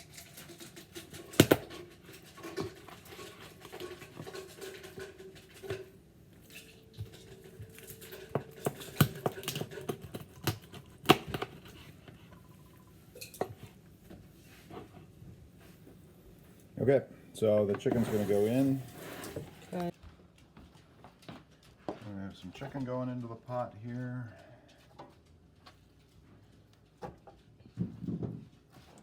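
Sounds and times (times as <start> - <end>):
knife and cookware on cutting board: 0.0 - 12.2.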